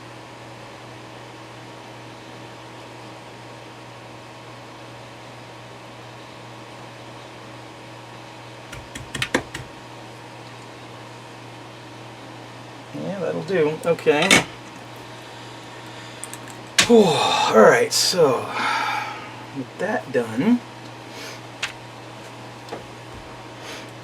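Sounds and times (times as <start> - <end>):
low mechanical hum: 0.0 - 24.0
tools clicking and knocking: 8.7 - 9.7.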